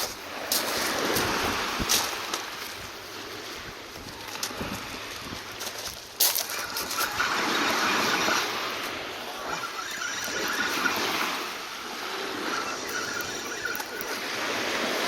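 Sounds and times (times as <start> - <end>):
sea water splashing: 0.0 - 15.0
wind on microphone: 0.0 - 15.0.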